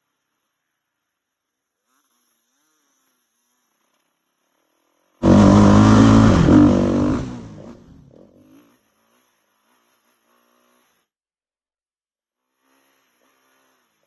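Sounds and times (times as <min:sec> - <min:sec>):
loud engine drone: 0:05.2 - 0:08.4.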